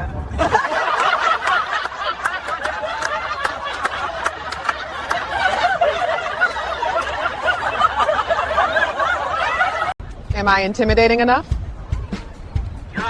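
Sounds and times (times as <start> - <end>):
people laughing: 0.3 - 10.0.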